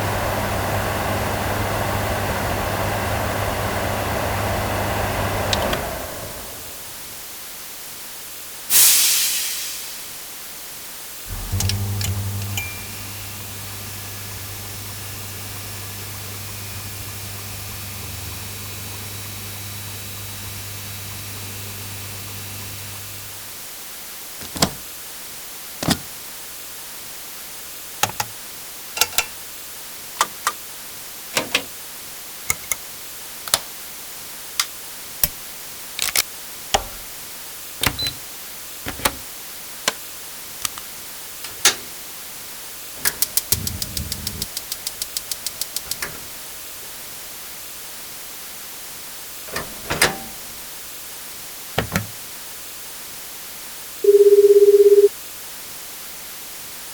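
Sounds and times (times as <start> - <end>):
electrical switches clicking: 11.3 - 13.0, 24.4 - 24.8, 25.8 - 26.1, 32.5 - 32.8, 33.5 - 33.7, 36.8 - 37.2, 37.8 - 38.2, 38.9 - 39.3, 41.4 - 42.0, 43.0 - 46.4, 49.5 - 50.8, 51.8 - 52.2
low electric hum: 11.3 - 23.4, 43.0 - 47.0, 49.5 - 50.8
rotary switch clicking rapidly: 43.0 - 46.3.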